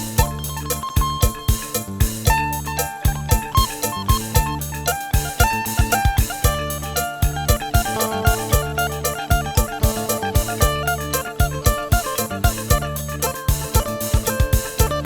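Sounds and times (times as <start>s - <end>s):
plucked or keyboard melody: 0.0s - 15.0s
deep drum hits: 5.2s - 15.0s.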